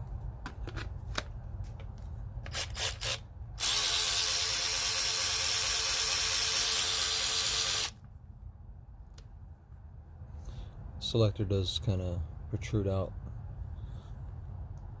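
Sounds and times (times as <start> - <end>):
electric ratchet motor running: 2.5 - 8.0.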